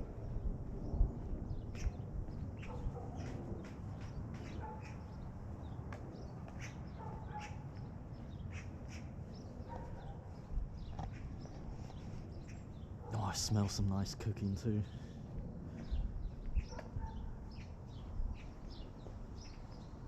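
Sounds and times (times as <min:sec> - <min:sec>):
steady low rumble: 0:00.0 - 0:04.6, 0:10.3 - 0:20.0
birds chirping: 0:00.0 - 0:20.0.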